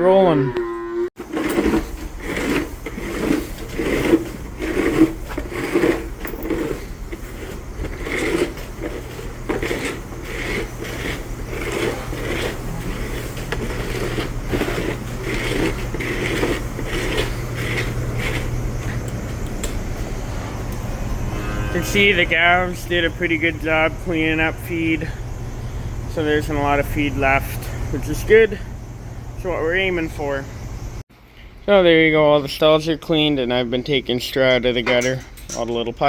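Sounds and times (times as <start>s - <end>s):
low hum of barn equipment: 0.0s - 36.0s
feed scraping on concrete: 1.2s - 25.2s.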